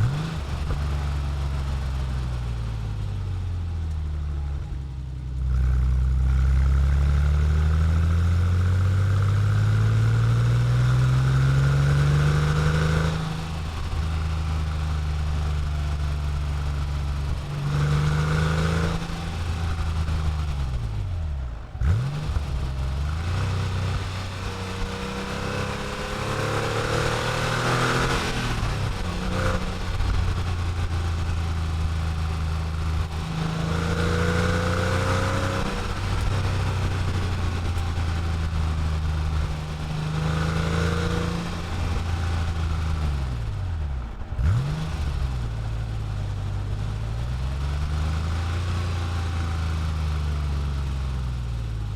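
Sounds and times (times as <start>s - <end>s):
car engine revving hard: 0.0s - 1.2s, 7.0s - 14.1s, 17.2s - 21.0s, 21.8s - 43.6s, 44.4s - 45.7s.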